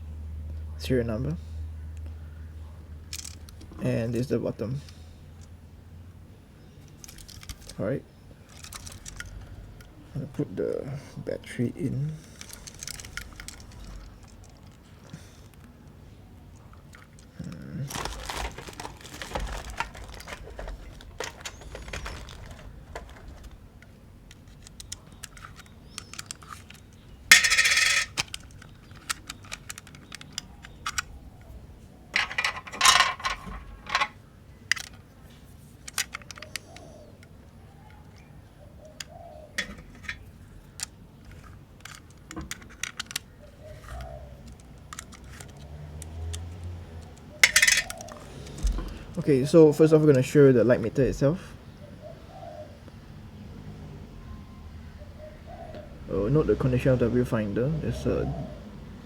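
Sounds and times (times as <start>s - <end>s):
small metal parts clicking: 3.0s - 5.6s, 6.8s - 7.8s, 8.4s - 10.0s, 12.2s - 15.7s, 16.5s - 31.2s, 32.1s - 35.0s, 35.8s - 37.4s, 39.0s - 49.2s
rattling scrapes: 17.9s - 23.6s, 26.4s - 29.1s, 32.2s - 34.2s, 47.4s - 48.3s.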